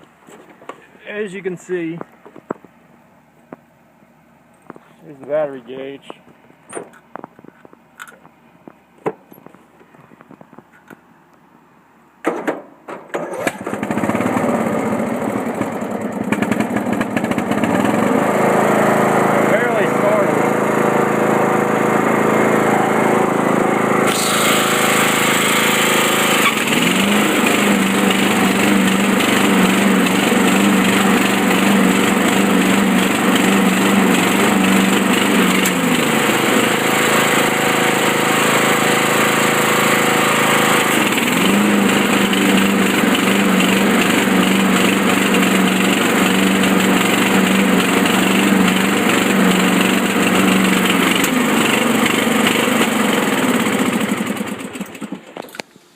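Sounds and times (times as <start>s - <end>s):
lawn mower engine running rough: 13.2s - 55.7s.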